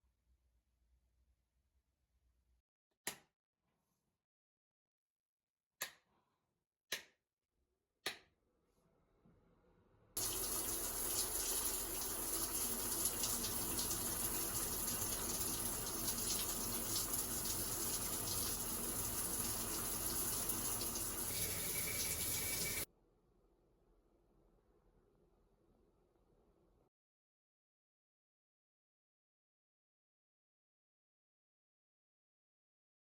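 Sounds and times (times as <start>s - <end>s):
water running: 10.2s - 22.9s.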